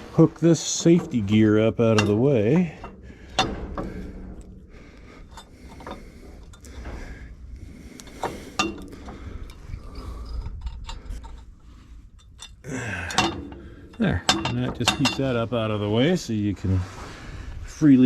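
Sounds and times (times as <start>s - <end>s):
light metallic clinks and knocks: 0.7s - 7.2s, 8.0s - 15.8s.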